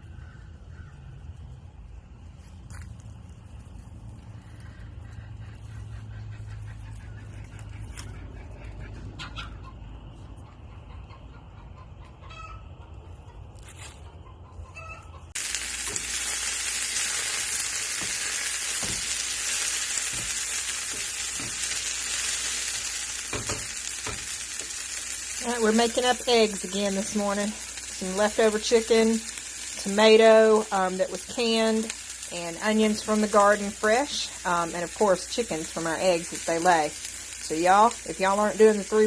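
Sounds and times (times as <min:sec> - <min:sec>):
chickens clucking: 0:04.6 - 0:15.4
food sizzling in a pan: 0:15.4 - 0:39.0.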